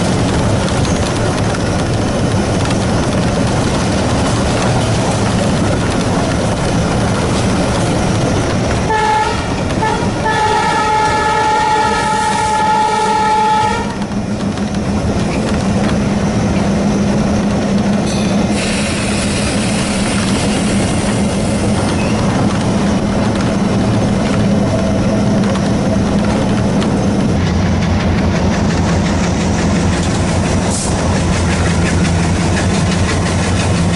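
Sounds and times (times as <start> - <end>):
diesel locomotive engine chugging: 0.0 - 33.9
locomotive horn: 8.8 - 14.1.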